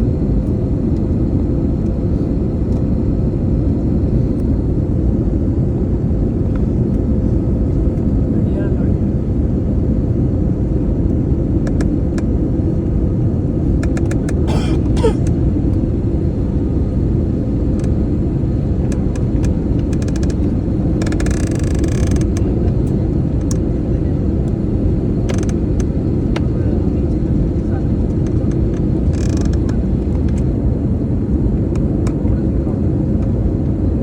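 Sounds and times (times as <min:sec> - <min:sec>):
engine and airflow rumble: 0:00.0 - 0:34.0
cabin creaks and clicks: 0:21.0 - 0:22.4, 0:25.3 - 0:25.6, 0:29.1 - 0:29.8.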